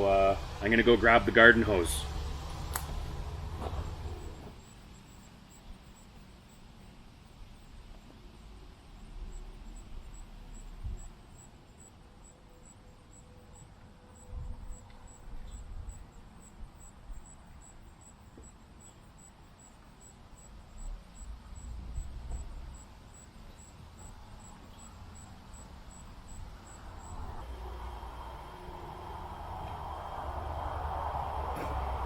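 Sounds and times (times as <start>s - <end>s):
insect chirping: 1.7s - 32.0s
low rumbles and thumps: 2.1s - 4.7s, 29.1s - 32.0s.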